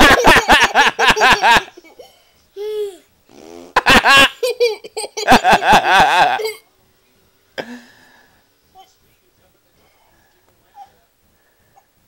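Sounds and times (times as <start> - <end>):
small child laughing: 3.8 - 6.6.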